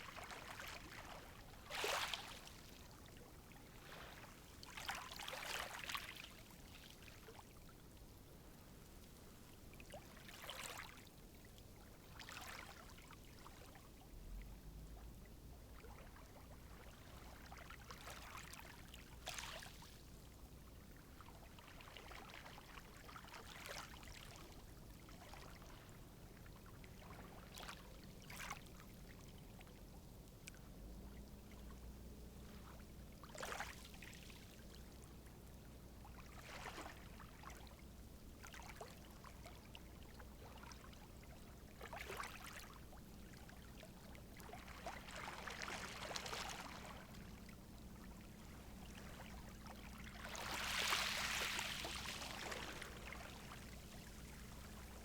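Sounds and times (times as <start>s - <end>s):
sea waves lapping at shore: 44.3s - 55.0s
wave splashes: 50.1s - 55.0s.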